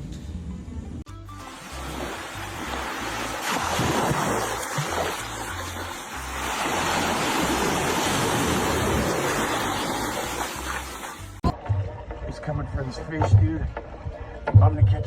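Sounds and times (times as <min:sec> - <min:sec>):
water rushing: 0:01.4 - 0:11.4.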